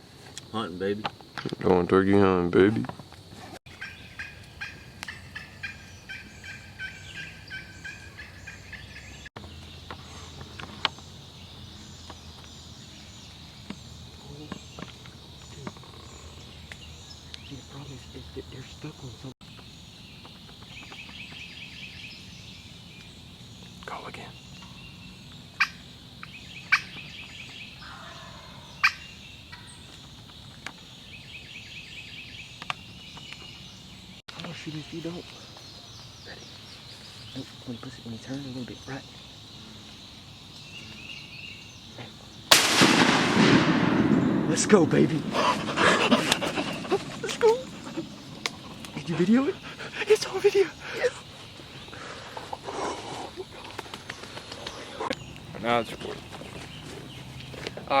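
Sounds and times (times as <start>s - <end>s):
turkey call: 3.7s - 9.0s
wild turkey yelping: 3.7s - 9.0s, 26.7s - 27.0s, 27.8s - 29.7s, 45.0s - 51.3s.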